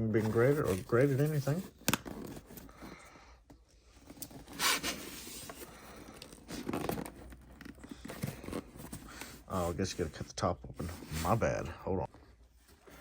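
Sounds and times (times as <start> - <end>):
packaging scraping and tearing: 4.0 - 9.5.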